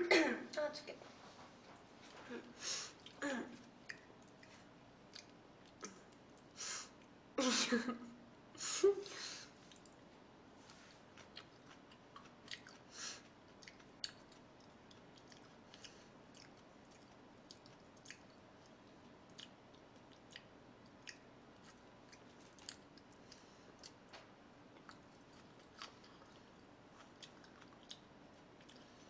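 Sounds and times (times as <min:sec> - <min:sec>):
wet mouth chewing clicks: 0:05.1 - 0:06.0, 0:11.2 - 0:12.9, 0:13.6 - 0:23.2, 0:27.0 - 0:28.9.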